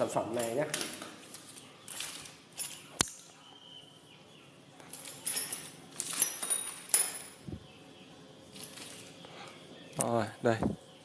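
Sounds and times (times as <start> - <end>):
drill bits clinking and rattling: 4.9 - 7.4.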